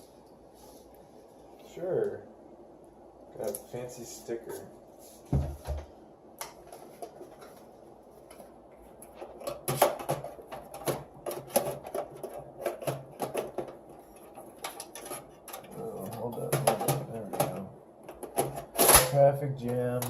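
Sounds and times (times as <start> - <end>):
computer parts clicking and knocking: 9.0 - 20.0.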